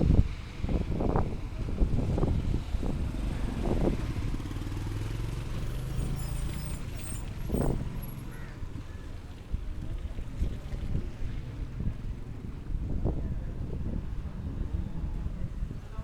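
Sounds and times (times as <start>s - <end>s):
engine humming: 0.7s - 12.5s.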